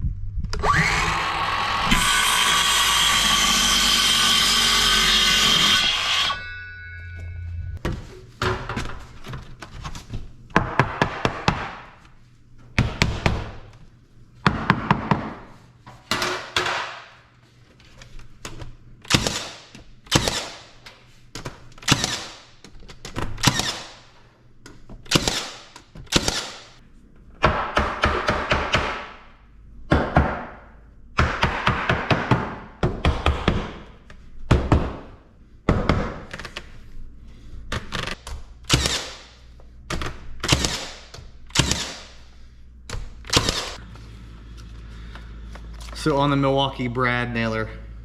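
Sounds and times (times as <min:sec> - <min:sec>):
nail gun firing: 0:19.1 - 0:20.7, 0:21.8 - 0:22.5, 0:23.4 - 0:24.0, 0:25.1 - 0:26.7, 0:38.0 - 0:39.4, 0:40.4 - 0:42.2, 0:43.3 - 0:43.8.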